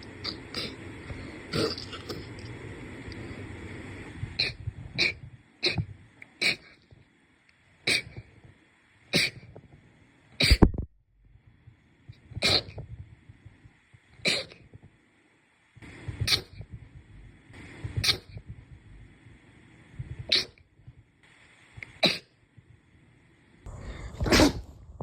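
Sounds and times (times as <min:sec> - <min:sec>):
person sneezing: 0:09.1 - 0:09.4, 0:10.4 - 0:10.7, 0:12.4 - 0:12.7, 0:14.2 - 0:14.6, 0:20.3 - 0:20.6, 0:22.0 - 0:22.3, 0:24.2 - 0:24.6.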